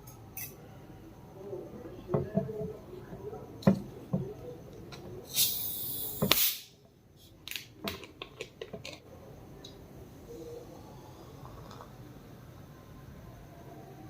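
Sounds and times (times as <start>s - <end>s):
hissing burst: 5.3s - 6.7s.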